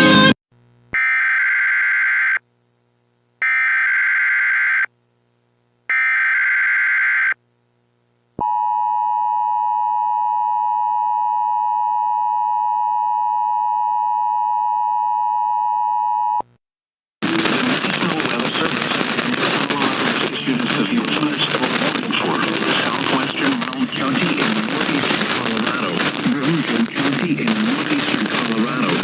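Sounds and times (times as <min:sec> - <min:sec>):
voice message: 0:00.0 - 0:00.4, 0:17.2 - 0:29.0.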